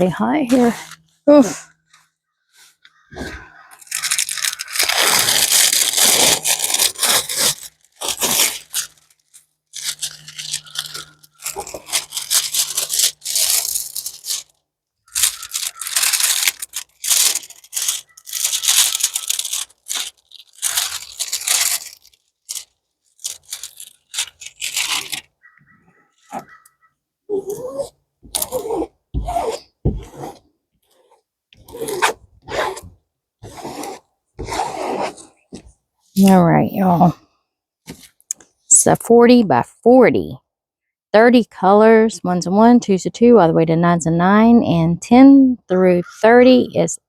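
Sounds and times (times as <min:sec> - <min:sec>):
packaging crinkling and tearing: 0:03.8 - 0:25.6.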